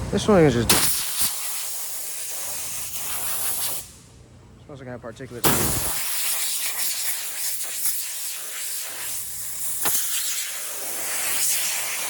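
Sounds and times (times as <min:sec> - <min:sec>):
air blow gun hissing: 0:00.7 - 0:04.0, 0:05.4 - 0:12.0.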